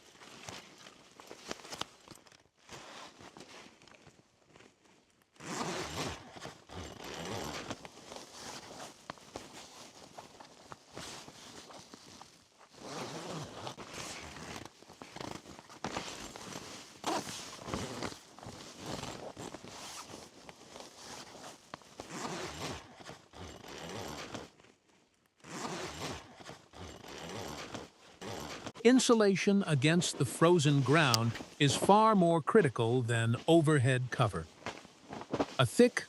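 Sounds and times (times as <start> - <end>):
tent zipper pulled on fabric: 2.7 - 3.6, 5.4 - 10.0, 12.7 - 24.7, 25.4 - 28.8.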